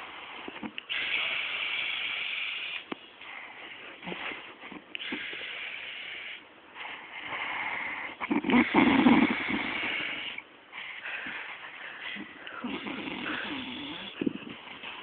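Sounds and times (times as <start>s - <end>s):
woman snoring loudly: 8.3s - 10.0s, 12.6s - 14.2s.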